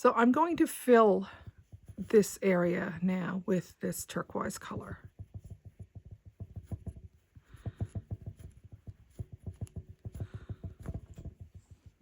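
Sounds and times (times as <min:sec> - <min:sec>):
soft low thumps of hooking: 0:04.7 - 0:12.0.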